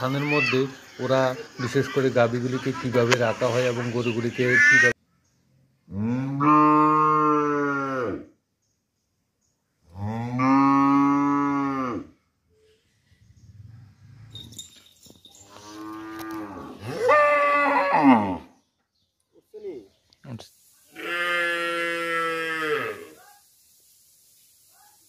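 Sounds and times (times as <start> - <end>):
cow mooing: 5.9 - 8.3, 10.0 - 12.1, 15.5 - 18.4, 21.0 - 23.1.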